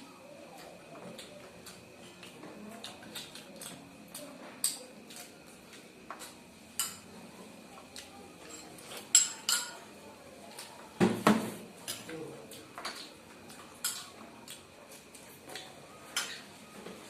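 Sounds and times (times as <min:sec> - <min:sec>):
spoons clinking on plates: 0:06.1 - 0:07.1, 0:08.4 - 0:09.9, 0:13.8 - 0:14.1, 0:16.1 - 0:16.5.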